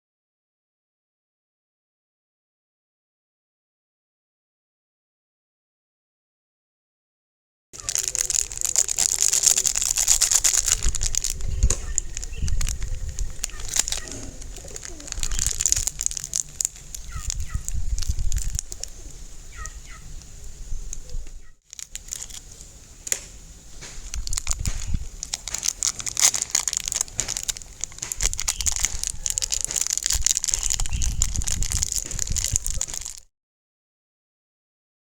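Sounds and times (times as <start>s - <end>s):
sticky slime crackling: 7.8s - 20.3s, 21.7s - 33.2s.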